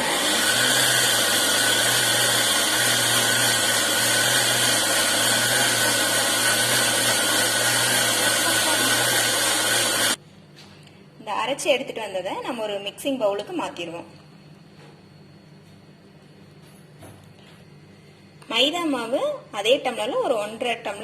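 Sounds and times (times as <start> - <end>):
electric mixer grinder running: 0.0 - 10.2.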